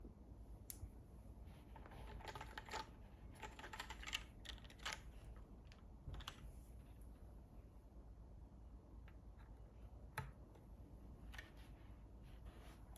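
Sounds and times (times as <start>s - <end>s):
mechanical keyboard typing: 2.0s - 5.1s.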